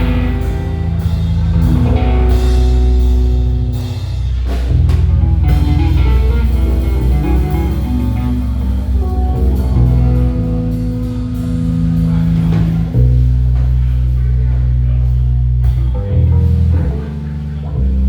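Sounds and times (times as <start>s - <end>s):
bass guitar: 0.0s - 18.0s
drums: 0.0s - 18.0s
guitar: 0.0s - 18.0s.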